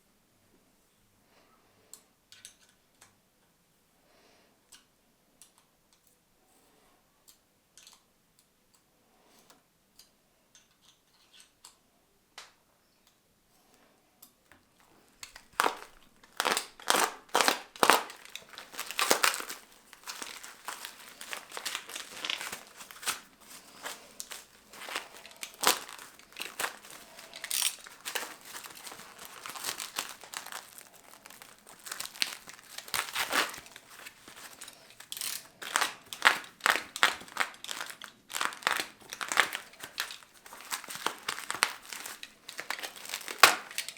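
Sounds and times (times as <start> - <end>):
plastic packaging crinkling: 15.2 - 43.9.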